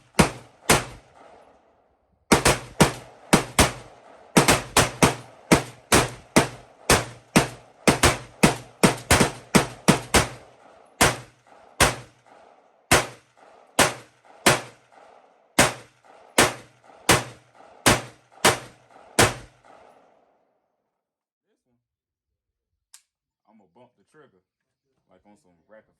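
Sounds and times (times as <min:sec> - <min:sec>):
gunshots with echo: 0:00.0 - 0:20.4.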